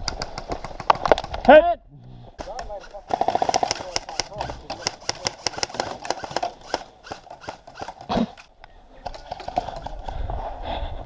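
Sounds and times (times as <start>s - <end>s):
airsoft guns firing: 2.4s - 8.4s.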